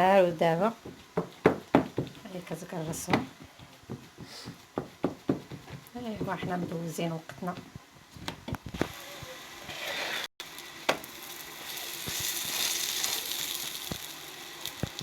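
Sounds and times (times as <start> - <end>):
food sizzling in a pan: 8.6 - 15.0.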